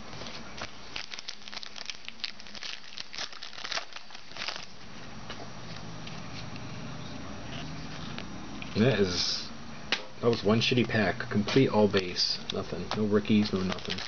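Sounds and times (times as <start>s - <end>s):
foil card pack crinkling: 0.1s - 5.0s, 13.3s - 14.0s.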